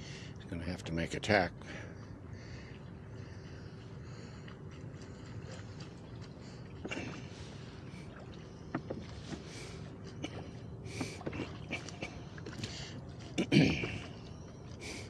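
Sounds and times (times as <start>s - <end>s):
low rumble of wind: 0.0s - 15.0s
waves slapping against boat hull: 5.0s - 14.8s.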